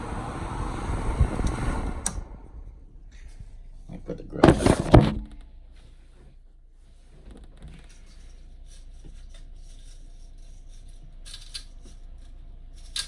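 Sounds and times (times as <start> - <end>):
air conditioner fan hum: 0.0 - 13.0
plastic rubbing and scraping: 1.2 - 5.5.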